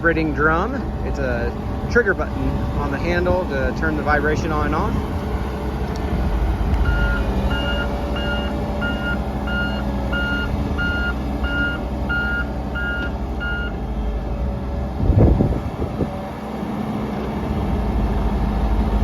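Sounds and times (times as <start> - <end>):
diesel engine running: 0.0 - 19.0
backup alarm beeping: 6.8 - 14.2.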